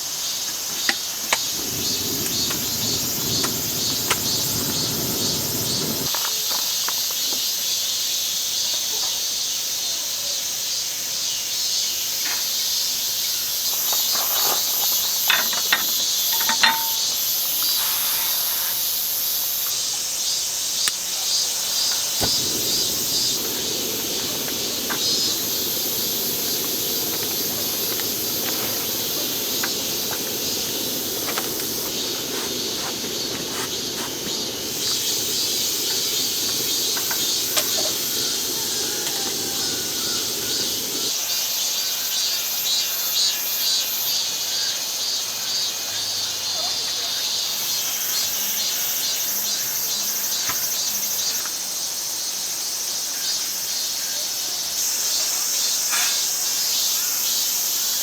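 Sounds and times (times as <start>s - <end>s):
low steady hiss: 0.0s - 8.6s, 19.8s - 42.3s
crickets and insects chirping: 0.0s - 58.0s.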